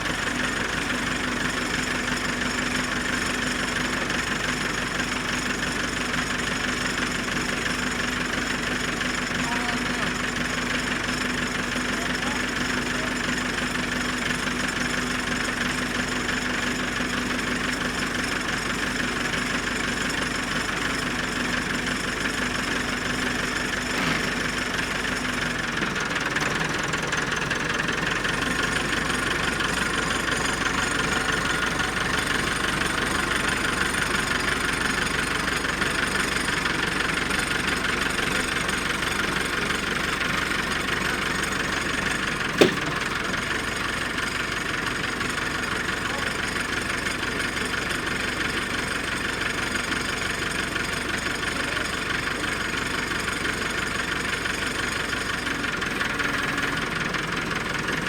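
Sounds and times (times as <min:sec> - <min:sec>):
tractor engine running: 0:00.0 - 0:58.0
sharp knock: 0:42.5 - 0:43.0.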